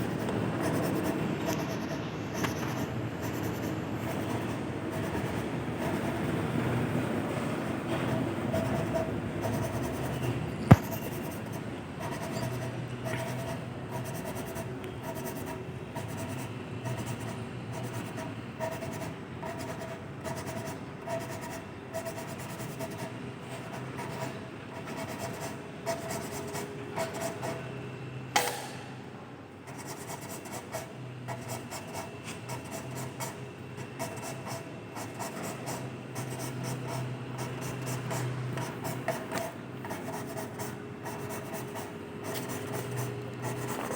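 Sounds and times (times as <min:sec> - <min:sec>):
sharp click: 0:28.4 - 0:28.9.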